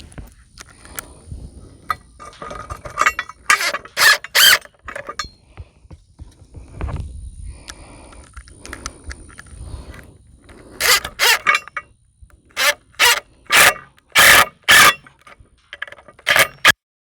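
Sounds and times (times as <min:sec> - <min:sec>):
handling and rustling: 0:01.8 - 0:05.4
power driver bursts: 0:10.7 - 0:11.8, 0:12.5 - 0:16.7.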